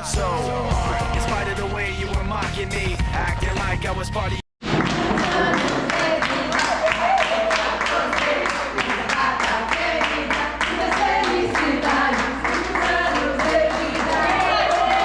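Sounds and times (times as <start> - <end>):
group singing a birthday song: 0.0 - 1.5, 4.7 - 15.0
rhythmic clapping: 4.7 - 15.0.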